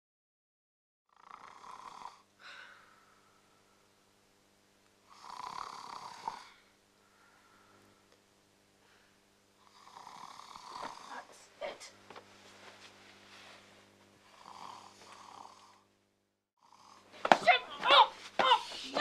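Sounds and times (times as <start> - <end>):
person snoring: 1.1 - 3.0, 5.0 - 6.8, 9.6 - 11.2, 14.2 - 15.9, 16.6 - 17.1.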